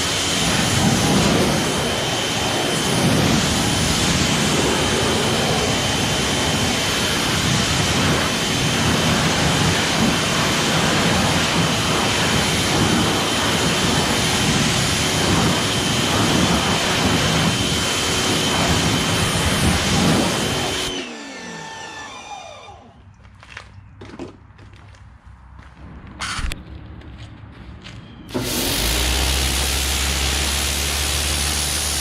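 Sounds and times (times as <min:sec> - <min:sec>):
pressure washer water jet hiss: 0:00.0 - 0:21.6, 0:28.3 - 0:32.0
motor whine: 0:00.0 - 0:23.1, 0:28.3 - 0:32.0.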